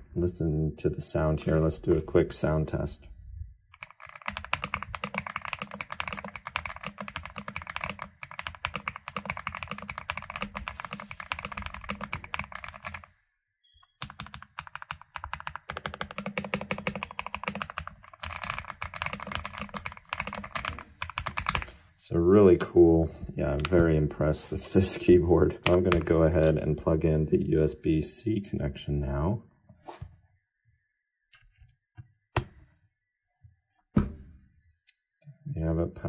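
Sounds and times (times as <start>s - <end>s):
fast mechanical keyboard typing: 3.8s - 13.1s, 14.0s - 21.7s, 25.6s - 26.2s.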